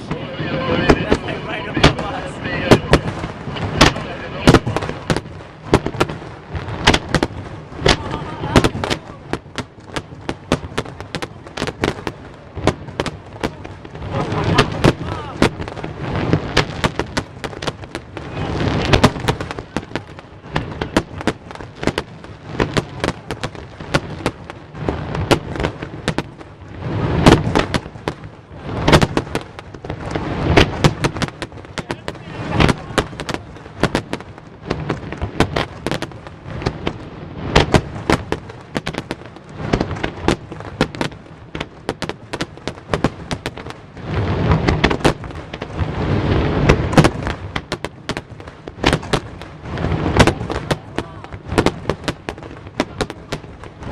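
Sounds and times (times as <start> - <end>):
fireworks bangs and crackles: 0.0 - 53.9
heavy fireworks booms: 0.0 - 53.9.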